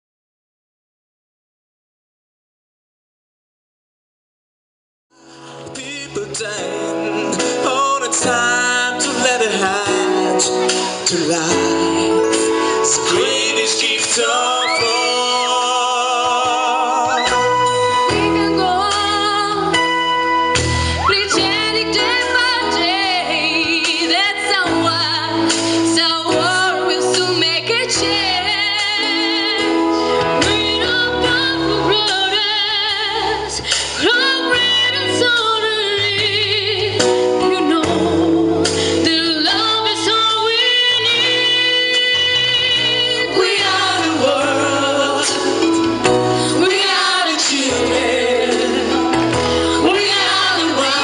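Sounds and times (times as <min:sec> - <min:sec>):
instrumental backing music: 0:05.2 - 0:51.0
woman singing with vibrato: 0:13.1 - 0:20.0, 0:20.9 - 0:45.3, 0:46.4 - 0:51.0.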